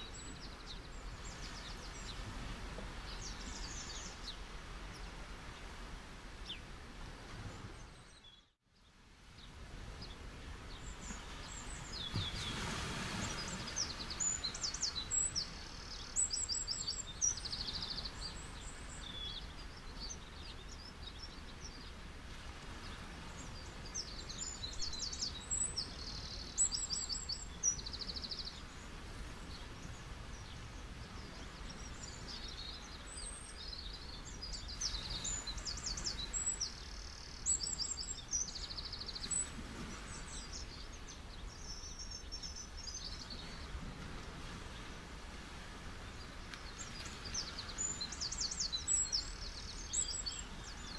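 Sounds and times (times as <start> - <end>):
sea waves on a beach: 0.0 - 50.9
small birds chirping: 13.2 - 22.0, 22.8 - 43.7, 46.1 - 50.9.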